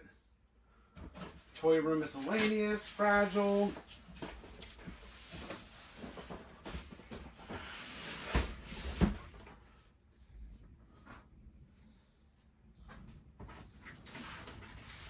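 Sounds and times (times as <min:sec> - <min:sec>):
cardboard boxes rustling: 0:01.0 - 0:09.6.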